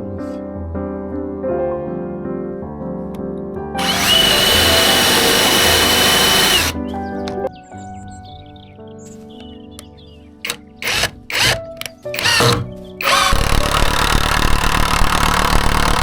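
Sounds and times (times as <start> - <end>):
soft piano music: 0.0 - 3.8, 4.4 - 13.1
power tool whining: 3.8 - 6.8, 10.8 - 11.6, 12.2 - 16.0.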